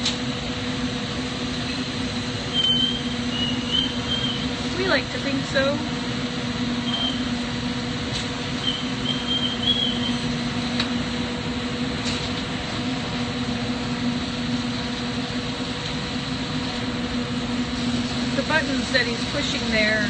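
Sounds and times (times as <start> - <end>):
constant low hum: 0.0 - 20.0
torch burning with rushing noise: 0.0 - 20.0.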